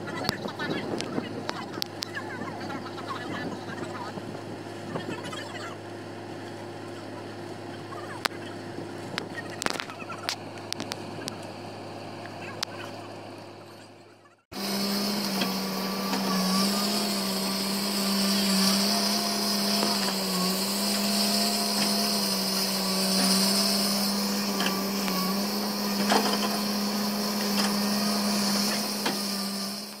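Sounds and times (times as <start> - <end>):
motor humming with hissing whine: 14.6 - 30.0.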